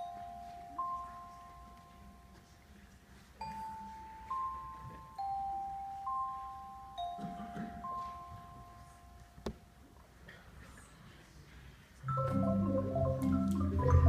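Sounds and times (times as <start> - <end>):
bell-like chime melody: 3.4 - 9.2.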